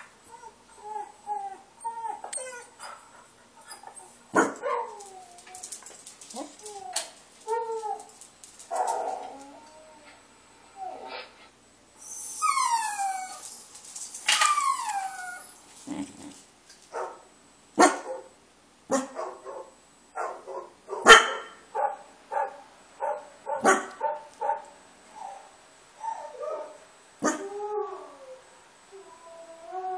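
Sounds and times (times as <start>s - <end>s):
dog whining: 0.3s - 4.2s, 12.0s - 13.6s, 14.3s - 16.4s
dog barking angrily: 4.3s - 5.0s, 17.8s - 18.3s, 18.9s - 24.7s.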